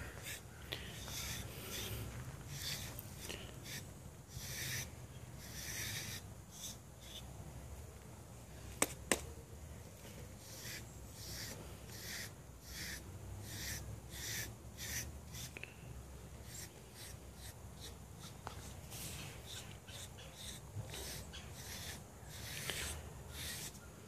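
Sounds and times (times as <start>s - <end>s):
blade rasping through dog fur: 0.1s - 7.2s, 10.4s - 15.6s, 19.4s - 23.8s.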